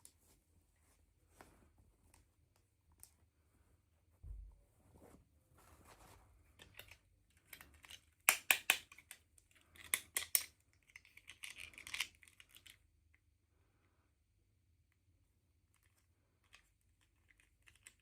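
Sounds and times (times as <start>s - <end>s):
plastic parts clicking: 6.6s - 12.8s.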